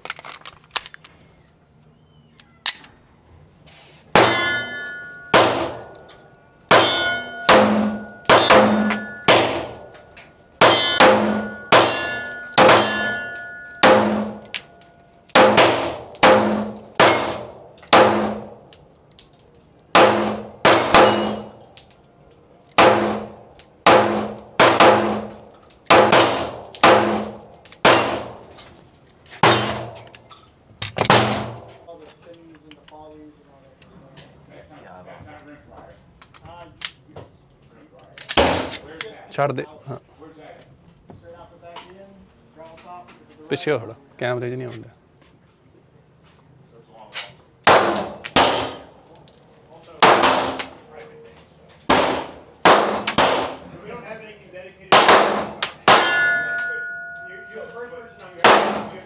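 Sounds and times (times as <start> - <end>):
pistol shots: 5.3 - 6.0, 6.7 - 9.9, 10.6 - 14.5, 15.3 - 18.6, 19.9 - 21.5, 22.8 - 28.4, 29.4 - 30.0, 31.1 - 31.6, 47.6 - 48.9, 50.0 - 50.8, 51.9 - 53.7, 54.9 - 56.6, 58.4 - 59.0.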